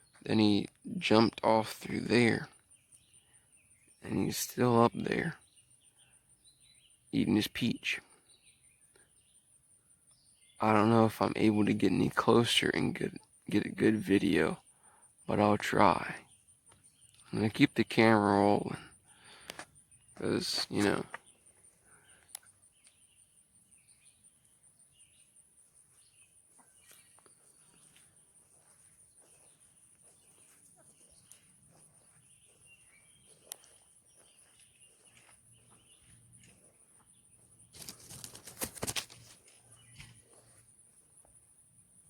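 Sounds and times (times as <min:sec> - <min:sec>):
bird chirps: 0:00.0 - 0:41.4
insect trill: 0:00.0 - 0:42.0
rustling: 0:26.6 - 0:40.7.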